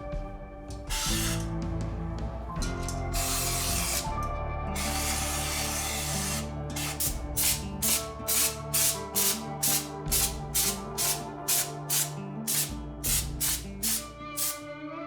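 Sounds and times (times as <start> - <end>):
shaker-like beat: 0.0 - 14.6
background music with held tones: 0.0 - 15.0
spray hiss: 3.2 - 4.1, 4.8 - 14.6.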